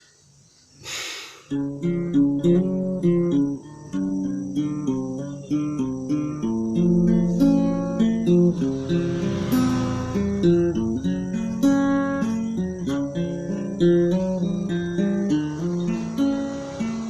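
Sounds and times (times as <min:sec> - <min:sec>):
acoustic guitar arpeggio: 0:01.5 - 0:17.0
short burst of noise: 0:08.5 - 0:11.2.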